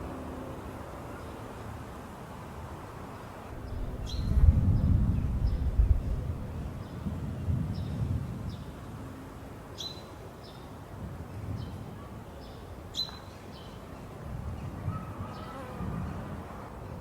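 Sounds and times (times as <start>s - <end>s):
low rumble: 3.6s - 6.7s.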